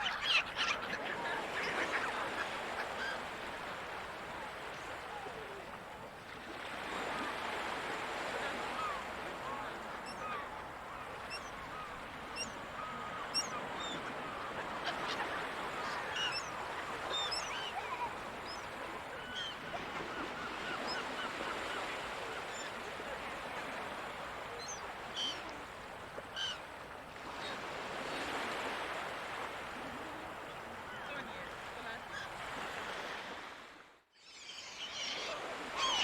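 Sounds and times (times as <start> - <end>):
gulls calling: 0.0 - 5.4, 8.3 - 29.5, 34.2 - 36.0
ocean surf: 0.0 - 33.9, 34.9 - 36.0.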